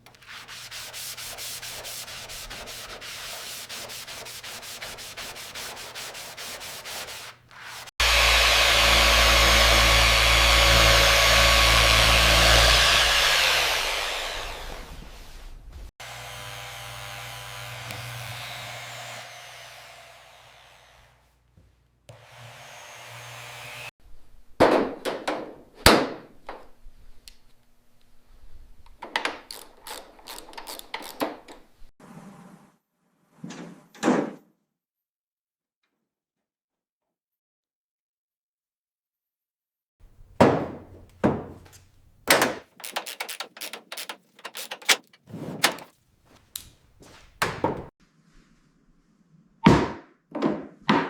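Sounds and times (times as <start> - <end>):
power tool running: 8.0 - 14.6, 16.0 - 20.3, 42.3 - 45.9
sharp knocks and clicks: 40.2 - 45.9.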